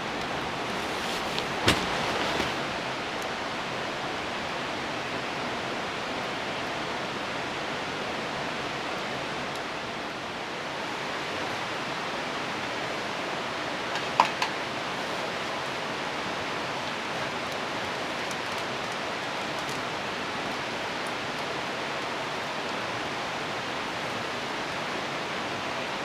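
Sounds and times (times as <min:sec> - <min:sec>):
rain falling: 0:00.0 - 0:03.1.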